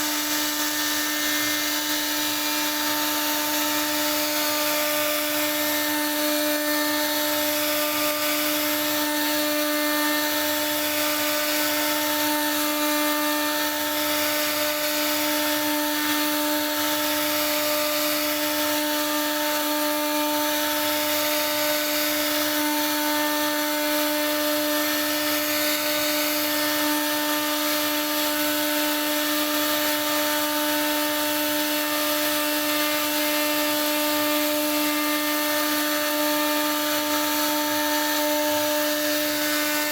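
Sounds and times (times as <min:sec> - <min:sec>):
router spindle whining: 0:00.0 - 0:39.9.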